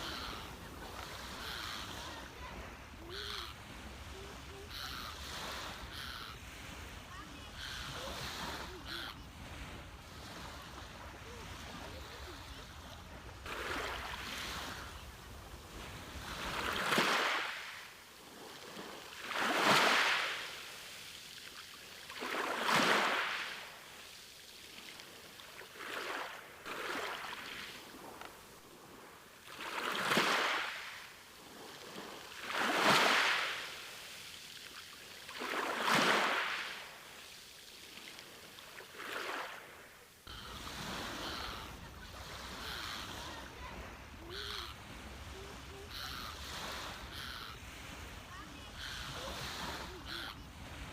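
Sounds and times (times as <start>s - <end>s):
sea waves breaking on beach: 0.0s - 50.9s.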